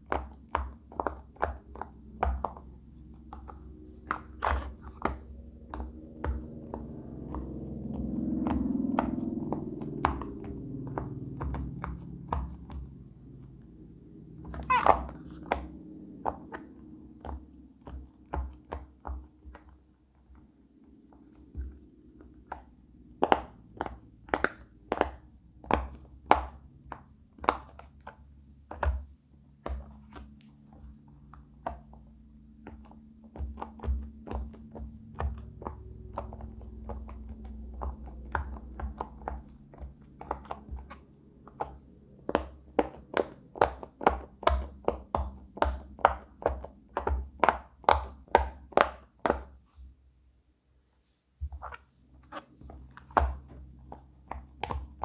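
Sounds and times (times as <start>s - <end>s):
silicone toy bubbles popping: 14.3s - 15.8s.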